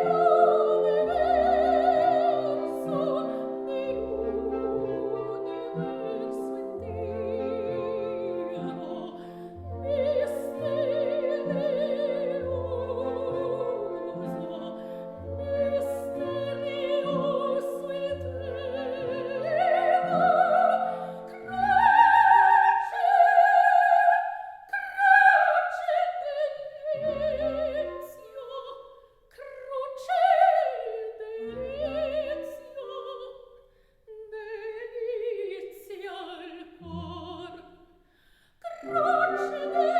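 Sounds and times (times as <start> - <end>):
orchestral accompaniment: 0.0 - 23.1, 38.7 - 39.9
operatic singing voice: 0.0 - 33.4, 38.6 - 39.9.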